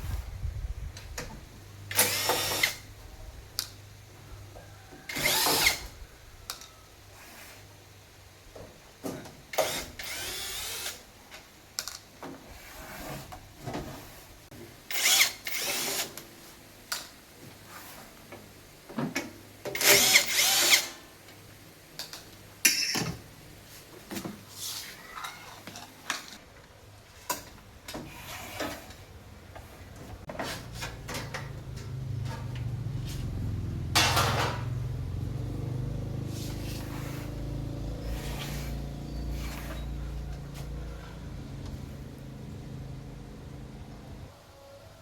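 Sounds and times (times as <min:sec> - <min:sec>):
power drill running: 0:01.9 - 0:02.9, 0:09.6 - 0:11.0, 0:14.9 - 0:16.1, 0:19.8 - 0:21.0.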